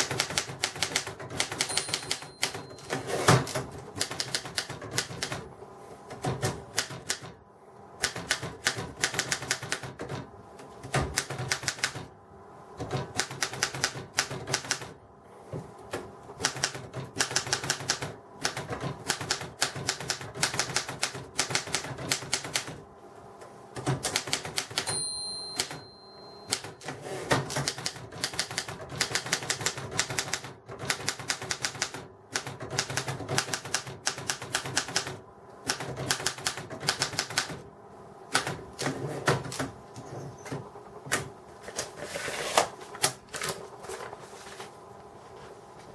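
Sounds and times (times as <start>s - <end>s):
typewriter keystrikes: 0.0s - 5.4s, 6.2s - 7.4s, 8.0s - 10.2s, 10.8s - 12.1s, 12.8s - 14.9s, 16.4s - 22.8s, 23.8s - 25.9s, 26.5s - 37.6s.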